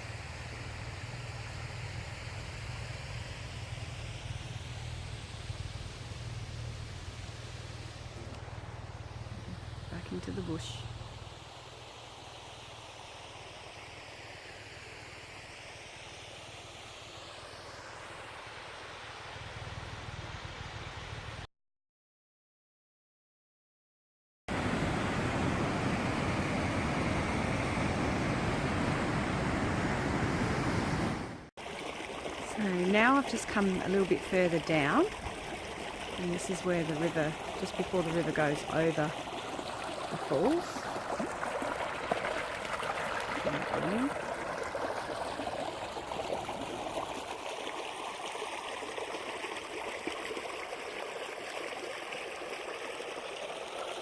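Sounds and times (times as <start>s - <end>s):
river water rushing: 24.5s - 54.0s.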